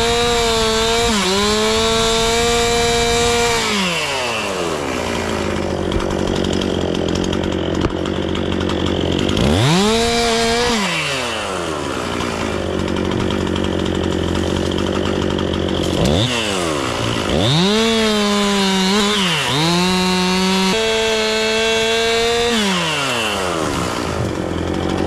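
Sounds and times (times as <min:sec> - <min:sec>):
chainsaw revving: 0:00.0 - 0:25.0.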